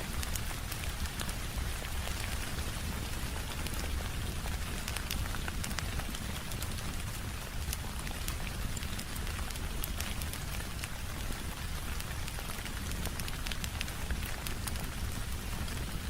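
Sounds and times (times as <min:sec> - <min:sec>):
steady rain: 0:00.0 - 0:16.0
wood fire crackling: 0:00.0 - 0:16.0.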